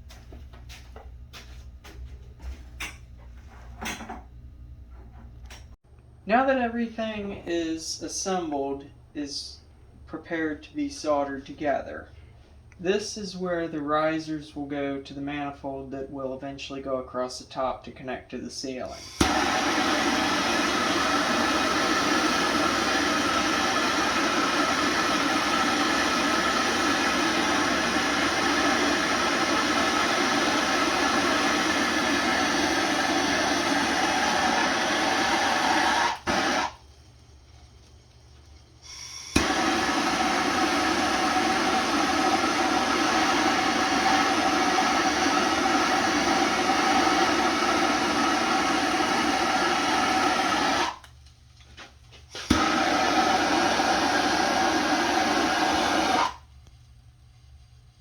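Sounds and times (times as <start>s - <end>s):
torch ignition click: 18.8s - 21.0s, 25.1s - 37.2s, 37.8s - 51.4s, 52.3s - 53.0s
torch flame hissing: 18.9s - 51.1s, 52.3s - 56.5s.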